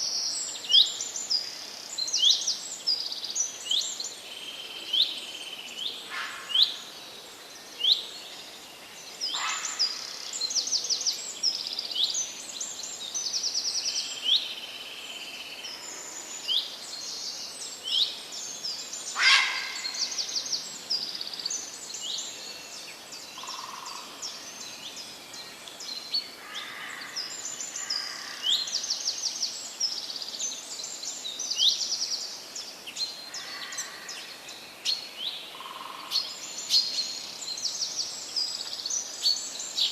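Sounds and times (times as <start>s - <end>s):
songbirds chirping and singing: 0.0s - 39.9s
sharp bird call: 19.2s - 20.1s.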